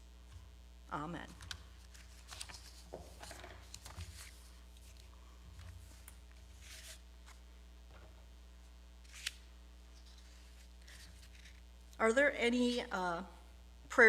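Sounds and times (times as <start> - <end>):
steady low hum: 0.0 - 14.0
faint rustling and handling: 1.5 - 11.9.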